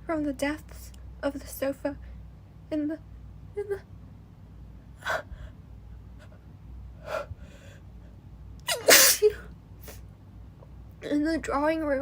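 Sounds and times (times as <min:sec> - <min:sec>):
woman sneezing: 0:08.7 - 0:10.0.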